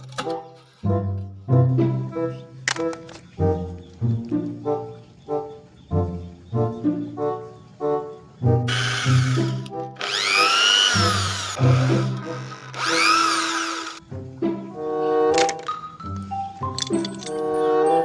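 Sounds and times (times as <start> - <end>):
background music: 0.0 - 18.0
electric drill whirring: 8.7 - 14.0.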